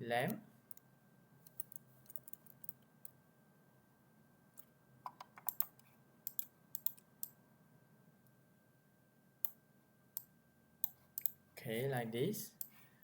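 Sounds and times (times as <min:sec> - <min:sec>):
keyboard and mouse clicks: 0:01.4 - 0:03.2, 0:04.6 - 0:07.4, 0:10.2 - 0:11.4.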